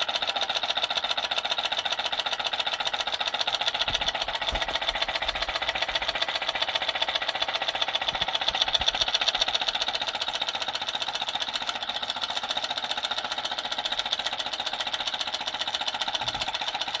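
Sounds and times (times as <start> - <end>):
small engine mechanism clattering: 0.0 - 17.0.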